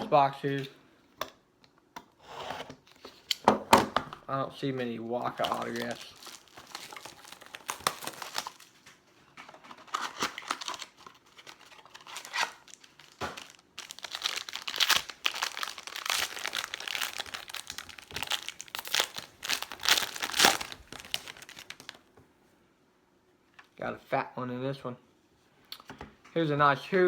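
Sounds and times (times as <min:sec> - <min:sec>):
plastic wrapping crinkling and tearing: 0:05.2 - 0:22.1.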